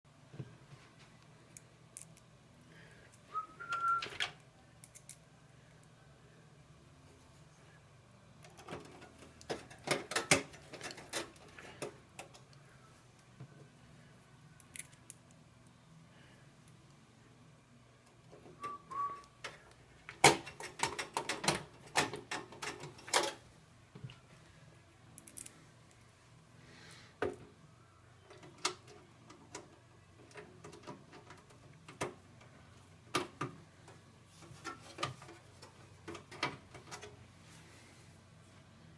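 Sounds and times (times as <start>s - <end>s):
computer parts clicking and knocking: 8.4s - 12.5s, 19.4s - 23.4s, 28.3s - 32.5s, 33.1s - 37.2s.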